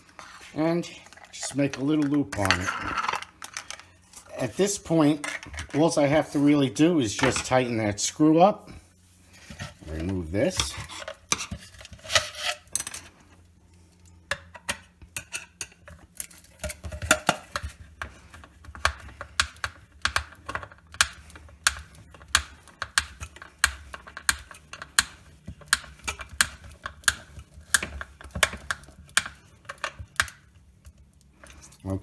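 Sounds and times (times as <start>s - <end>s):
screwdriver clicks and taps: 18.8s - 30.4s.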